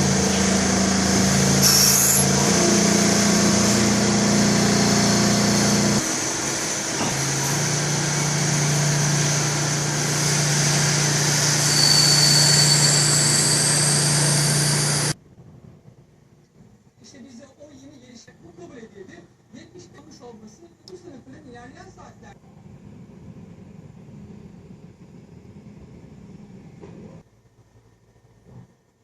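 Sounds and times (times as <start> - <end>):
lathe mechanical hum: 0.0 - 15.2
thin high whine: 0.0 - 15.2.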